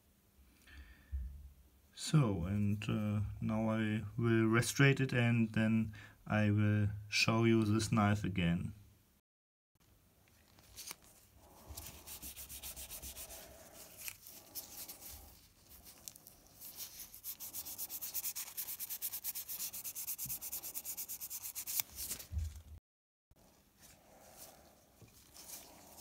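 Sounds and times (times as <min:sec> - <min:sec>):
abrasive sanding strokes: 0:11.4 - 0:22.2.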